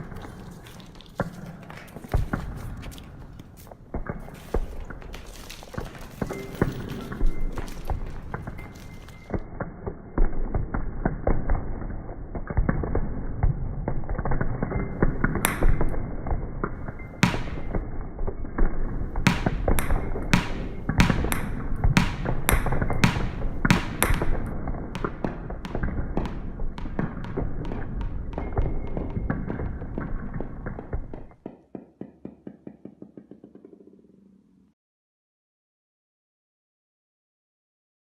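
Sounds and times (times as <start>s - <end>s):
knocks and thumps of objects: 16.8s - 17.8s, 19.1s - 34.4s.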